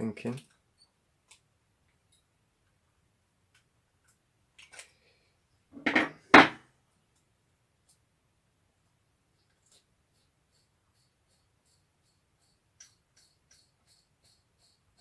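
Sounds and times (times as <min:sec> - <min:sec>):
tools knocking on workbench: 0:05.8 - 0:06.6.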